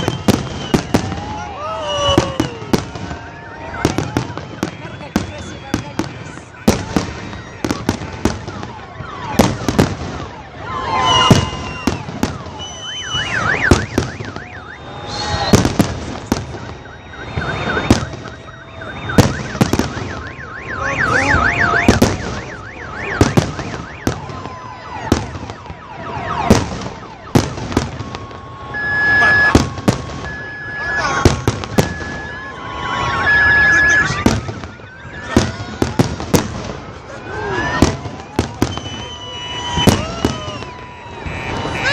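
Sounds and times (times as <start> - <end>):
fireworks bangs and crackles: 0.0 - 41.9
warbling alarm tone: 12.4 - 35.6.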